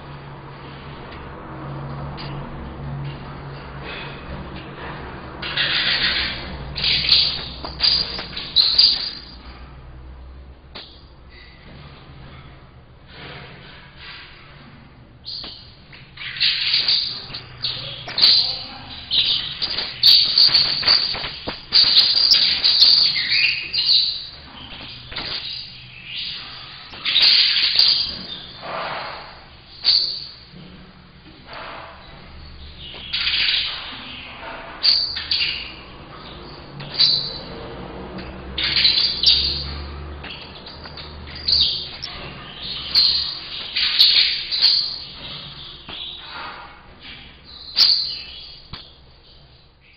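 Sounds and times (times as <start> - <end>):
finch singing high chirps: 5.4 - 9.5, 15.2 - 28.6, 29.7 - 30.5, 32.4 - 37.5, 38.6 - 46.3, 47.0 - 49.9.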